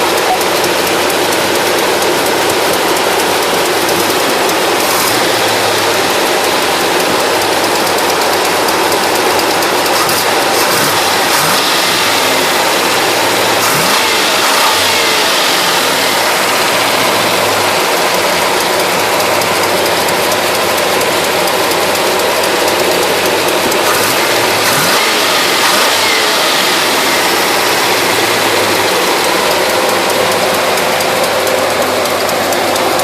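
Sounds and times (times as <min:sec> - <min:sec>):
engine running: 0:00.0 - 0:33.0
loud rush of noise: 0:00.0 - 0:33.0.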